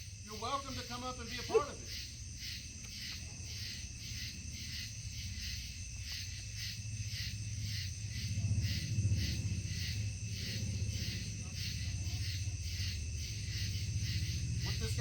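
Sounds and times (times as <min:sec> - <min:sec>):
crickets chirping: 0:00.0 - 0:15.0
low rumble: 0:07.3 - 0:15.0.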